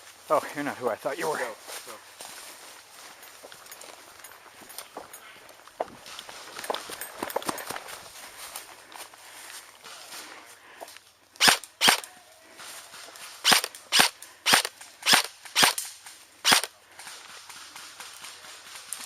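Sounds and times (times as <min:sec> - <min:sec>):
airsoft gun shots popping: 0:13.5 - 0:15.9.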